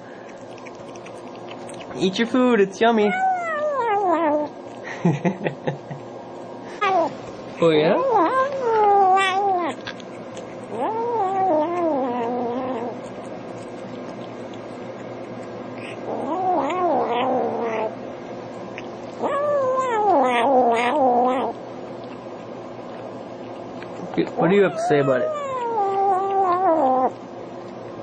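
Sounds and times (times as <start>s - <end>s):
kitten crying: 3.0s - 4.5s, 6.8s - 7.1s, 7.9s - 9.8s, 10.7s - 13.0s, 15.8s - 18.0s, 19.2s - 21.6s, 24.4s - 27.1s.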